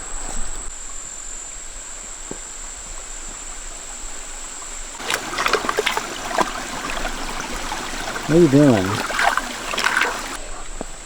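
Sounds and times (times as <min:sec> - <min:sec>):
stream trickling: 0:04.2 - 0:10.4
water splashing and gurgling: 0:05.0 - 0:10.4.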